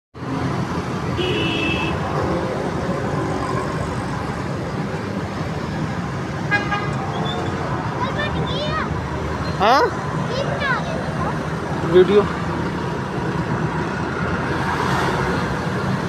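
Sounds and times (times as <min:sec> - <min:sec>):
road traffic: 0:00.2 - 0:16.0
vehicle horn tooting: 0:01.2 - 0:02.0, 0:06.5 - 0:07.0.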